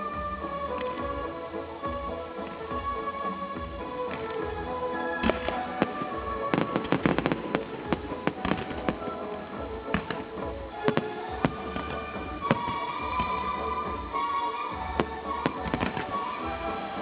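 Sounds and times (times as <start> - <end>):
firework bangs: 0.0 - 17.0
music: 0.0 - 17.0
rapid crackling firework reports: 0.0 - 17.0.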